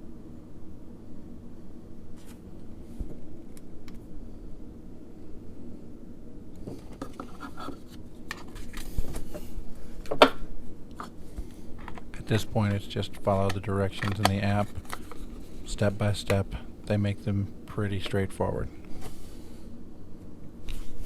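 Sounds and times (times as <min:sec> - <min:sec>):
scratching and rubbing handling noises: 0:11.6 - 0:19.2.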